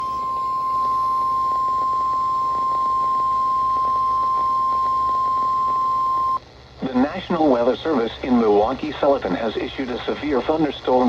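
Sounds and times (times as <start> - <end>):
steady alarm tone: 0.0 - 6.4.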